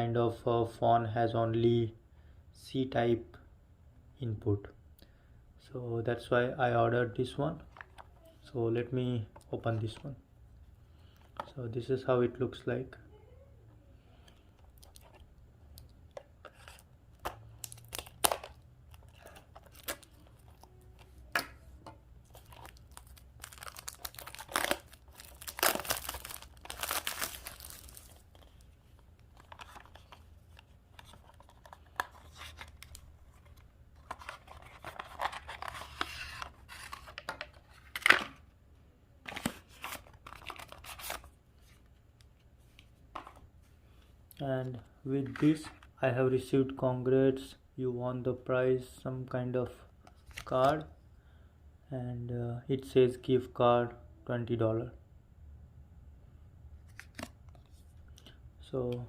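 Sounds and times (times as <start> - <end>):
packaging tearing and crinkling: 17.6 - 20.7, 22.3 - 28.4.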